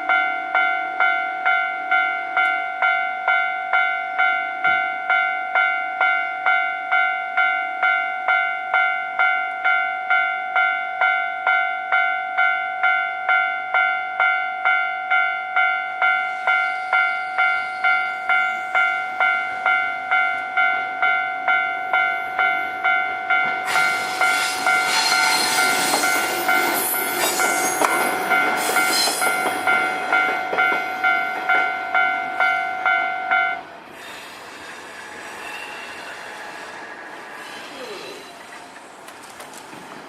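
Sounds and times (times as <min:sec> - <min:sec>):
level crossing alarm dinging: 0:00.0 - 0:33.7
train rumbling and squealing: 0:15.9 - 0:40.0.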